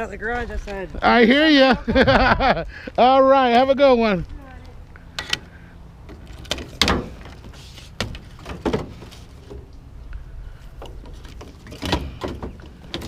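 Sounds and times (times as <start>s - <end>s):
low steady hum: 0.0s - 13.0s
scrap thunks and knocks: 6.4s - 9.6s.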